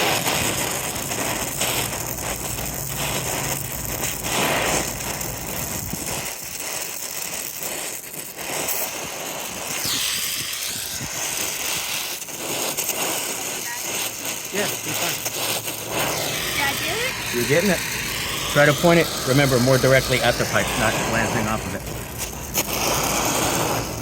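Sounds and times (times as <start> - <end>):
torch flame hissing: 0.0 - 24.0
low rumble: 14.8 - 24.0.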